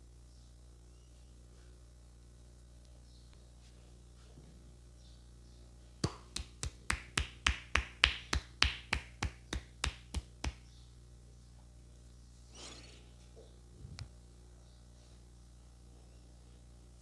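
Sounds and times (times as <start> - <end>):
hands slapping on head: 6.0 - 10.6.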